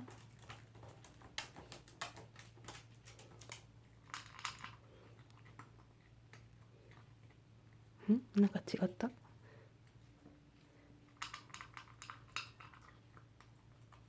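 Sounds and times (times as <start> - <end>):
dog clicking at food bowl: 0.0 - 5.8.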